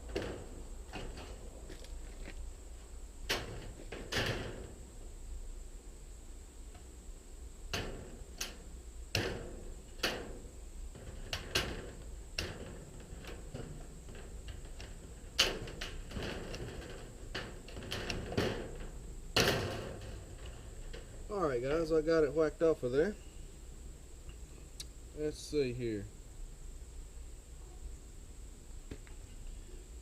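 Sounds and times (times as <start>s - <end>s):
sheet metal clicks and snaps: 3.3s - 4.8s, 7.7s - 21.3s.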